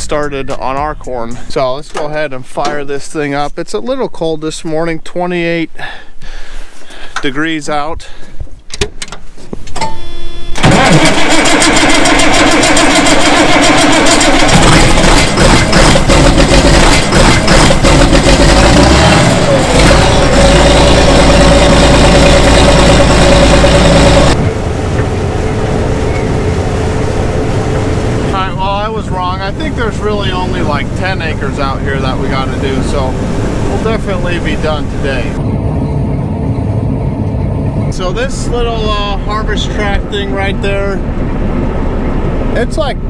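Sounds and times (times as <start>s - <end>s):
diesel engine starting and running: 6.9s - 43.0s
brief tone: 9.8s - 10.6s, 25.0s - 26.6s.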